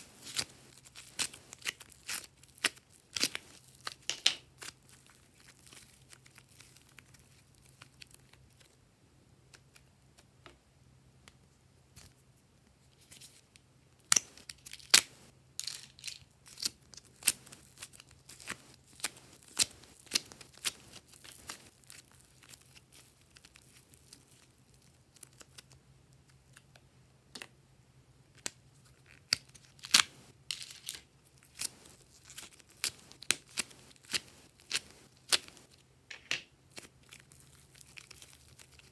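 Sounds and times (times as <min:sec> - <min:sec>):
hands squishing sticky slime: 0:00.0 - 0:08.6, 0:16.4 - 0:25.7.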